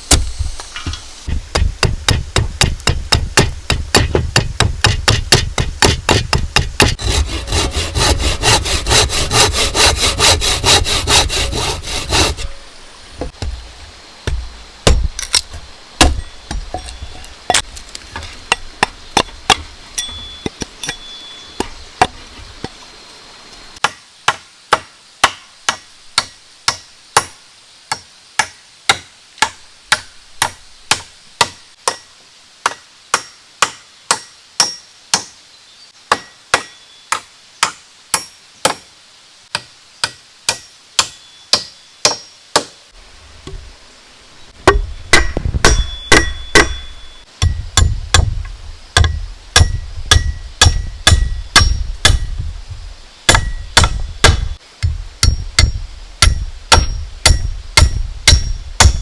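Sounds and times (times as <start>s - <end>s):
hand tool striking wood: 0.1s - 12.6s, 14.2s - 21.0s, 44.6s - 52.4s, 53.3s - 59.0s.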